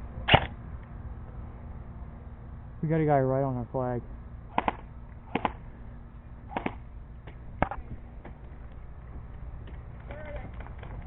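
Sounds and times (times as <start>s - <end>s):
airsoft guns firing: 4.5s - 5.6s, 6.5s - 6.8s.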